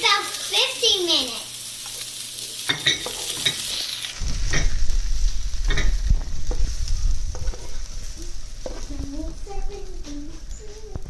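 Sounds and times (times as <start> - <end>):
food sizzling in oil: 0.0 - 11.0
low rumble: 4.2 - 11.0
utensil scraping a pan: 5.6 - 10.6.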